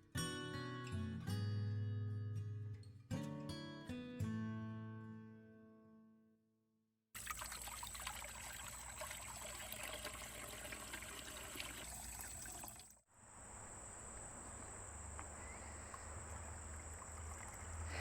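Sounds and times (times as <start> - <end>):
garden fountain trickling: 7.2 - 13.0, 15.0 - 18.0.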